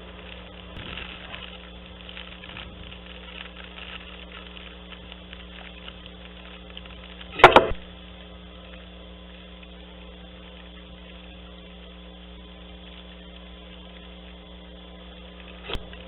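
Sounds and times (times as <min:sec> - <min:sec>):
steady low hum: 0:00.0 - 0:16.0
loud clatter: 0:07.3 - 0:07.8.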